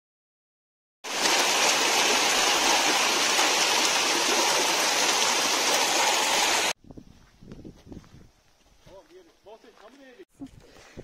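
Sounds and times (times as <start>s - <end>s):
running water rushing: 1.0s - 6.8s.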